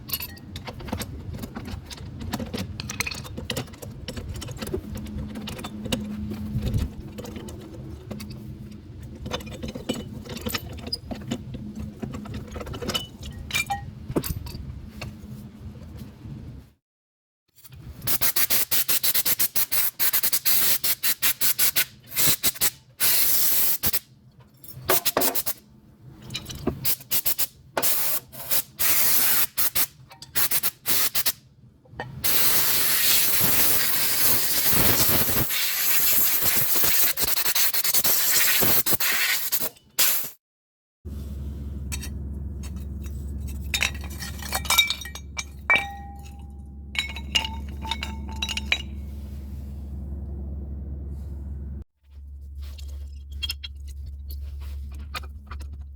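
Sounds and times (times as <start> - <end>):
steady low hum: 41.1 - 55.9
light metal clinks: 42.6 - 49.1.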